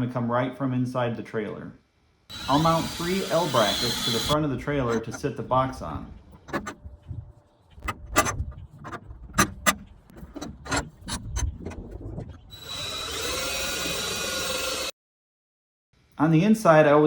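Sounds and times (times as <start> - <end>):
power drill running: 2.3 - 5.1, 12.5 - 14.9
wood and hardware clattering: 6.3 - 6.8, 7.8 - 12.4.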